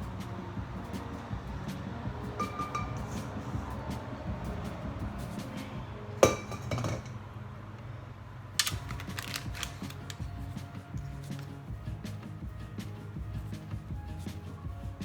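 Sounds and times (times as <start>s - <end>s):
background music: 0.0s - 7.8s, 8.6s - 15.0s
kitchen utensil clatter: 2.4s - 3.6s, 6.2s - 7.2s.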